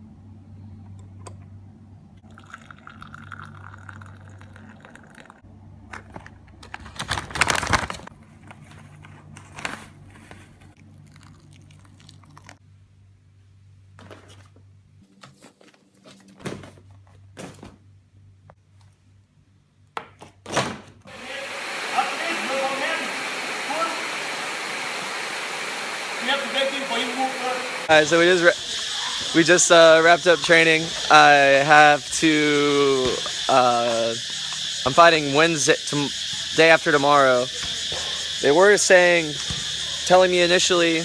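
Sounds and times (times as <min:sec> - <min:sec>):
steady low hum: 0:00.0 - 0:06.7
liquid sounds: 0:02.2 - 0:05.4, 0:10.8 - 0:12.6.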